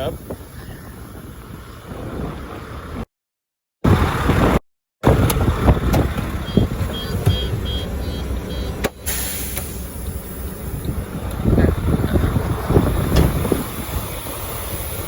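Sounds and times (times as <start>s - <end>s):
diesel truck engine rumbling: 0.0s - 3.1s, 3.9s - 15.0s
short high beeps: 6.4s - 8.8s
air hiss: 9.0s - 10.9s, 13.0s - 15.0s.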